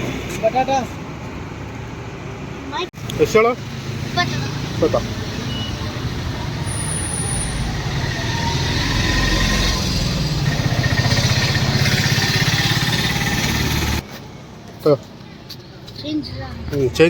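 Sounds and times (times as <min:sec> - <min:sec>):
street traffic: 0:00.0 - 0:17.0
vehicle engine throbbing: 0:05.9 - 0:14.0.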